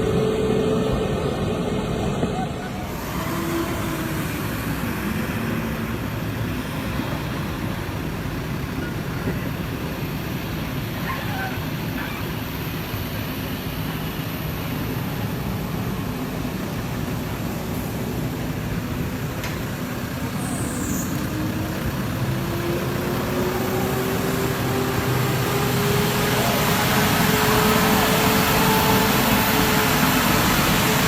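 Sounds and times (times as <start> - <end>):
truck diesel engine droning: 0.0 - 31.0.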